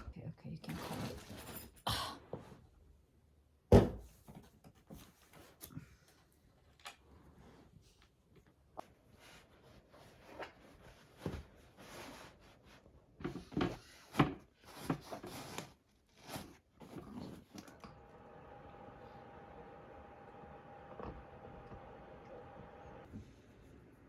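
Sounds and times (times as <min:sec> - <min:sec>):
knocks and thuds of furniture: 0:03.7 - 0:04.3.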